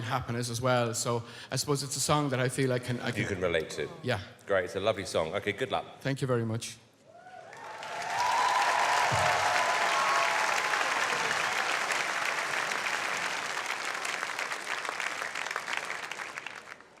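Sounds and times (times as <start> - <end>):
audience whooping: 7.1 - 16.6
audience applauding: 7.4 - 17.0.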